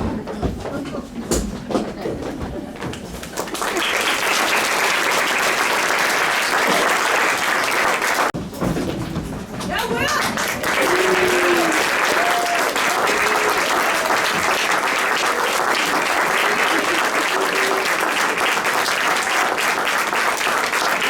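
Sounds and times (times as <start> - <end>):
audience applauding: 2.9 - 8.4, 9.7 - 21.0
faint voices: 9.5 - 19.4.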